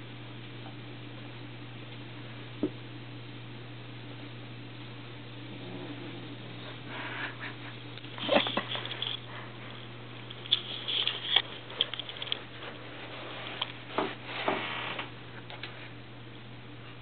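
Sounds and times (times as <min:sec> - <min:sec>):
steady low hum: 0:00.0 - 0:17.0
kitten scrabbling and rustling: 0:08.1 - 0:15.1.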